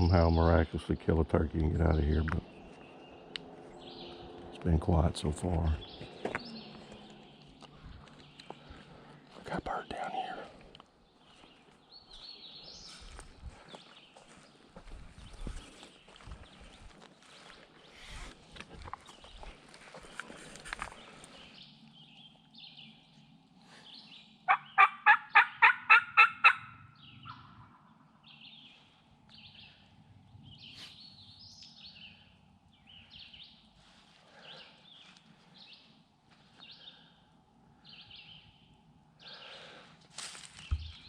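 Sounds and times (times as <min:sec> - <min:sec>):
low steady rumble: 0:00.0 - 0:09.4
faint songbird chirps: 0:00.0 - 0:25.7, 0:26.4 - 0:41.0
turkey call yelps: 0:24.5 - 0:27.8.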